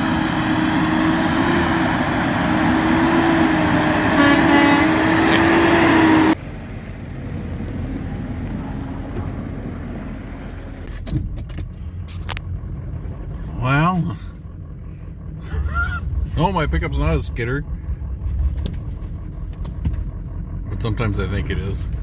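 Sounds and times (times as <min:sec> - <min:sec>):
truck engine whining: 0:00.0 - 0:22.0
low rumble: 0:06.3 - 0:22.0.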